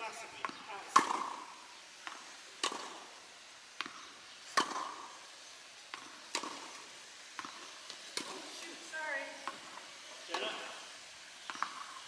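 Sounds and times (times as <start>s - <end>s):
racket hitting tennis ball: 0.4s - 3.2s, 3.8s - 5.1s, 5.9s - 8.8s.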